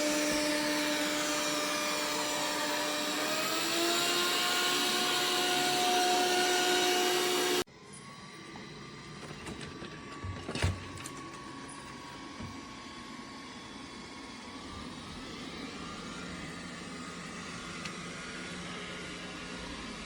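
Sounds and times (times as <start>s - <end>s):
robot vacuum motor whir: 0.0s - 7.6s.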